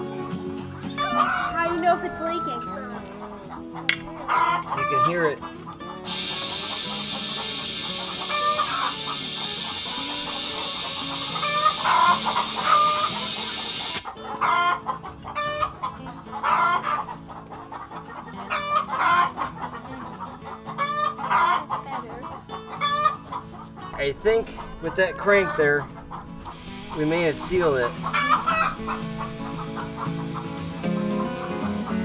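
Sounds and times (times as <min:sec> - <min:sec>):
chickens clucking: 0:00.0 - 0:32.0
air hissing into a tire: 0:06.1 - 0:14.0, 0:26.4 - 0:32.0.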